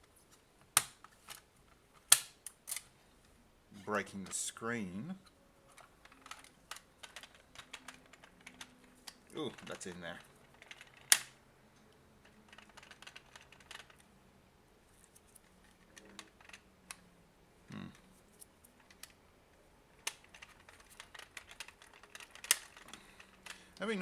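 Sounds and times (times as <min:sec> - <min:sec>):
plastic and metal parts clicking: 0:05.7 - 0:11.4, 0:12.2 - 0:14.1, 0:15.0 - 0:17.0, 0:18.4 - 0:19.2, 0:20.0 - 0:24.0.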